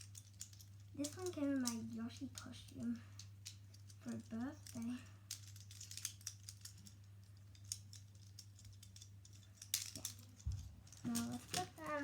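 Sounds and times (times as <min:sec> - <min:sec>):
fidget toy plastic clicks: 0:00.0 - 0:12.0.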